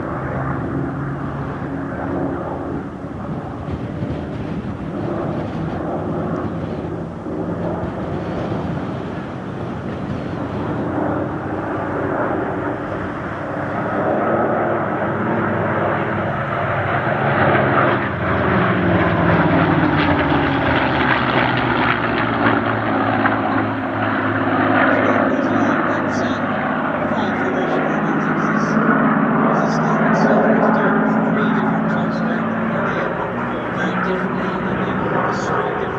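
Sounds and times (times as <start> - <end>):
propeller plane flying past: 0.0 - 35.9.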